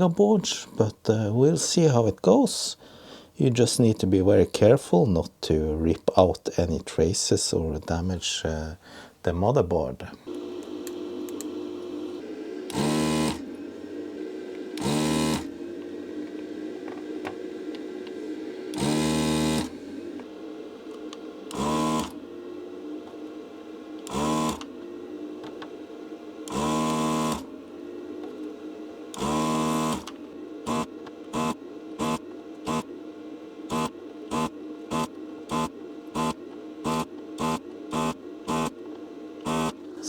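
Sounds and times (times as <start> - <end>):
steady hum: 0.0 - 40.0
vacuum pump buzzing: 10.2 - 40.0.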